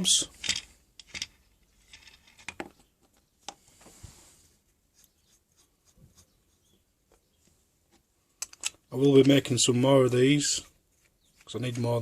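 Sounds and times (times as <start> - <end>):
soft rustle: 1.6 - 8.3, 10.2 - 12.0
wooden knobs clicking and knocking: 7.9 - 9.7.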